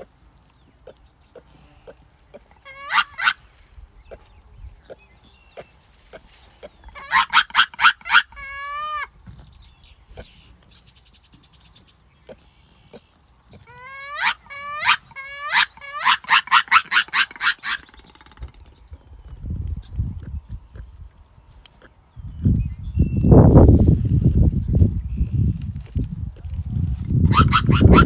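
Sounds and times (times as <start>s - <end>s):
farm animals calling rapidly: 0.8s - 5.0s, 5.6s - 9.1s, 12.3s - 18.7s, 26.4s - 28.0s.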